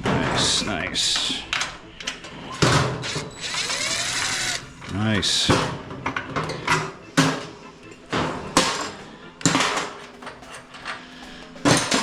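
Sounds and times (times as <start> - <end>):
metal tools knocking and clunking: 5.5 - 12.0.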